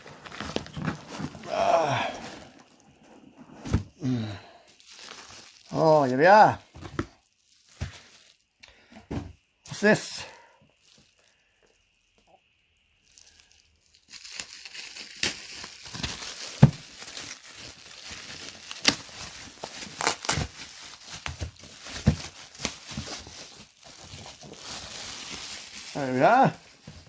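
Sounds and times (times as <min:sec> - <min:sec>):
packaging crinkling and tearing: 0:00.0 - 0:03.0, 0:03.6 - 0:08.5, 0:13.0 - 0:27.0.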